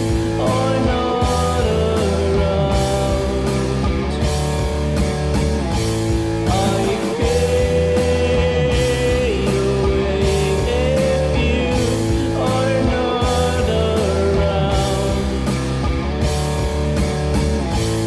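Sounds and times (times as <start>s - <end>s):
drums striking: 0.0s - 18.0s
grunge rock band playing: 0.0s - 18.0s.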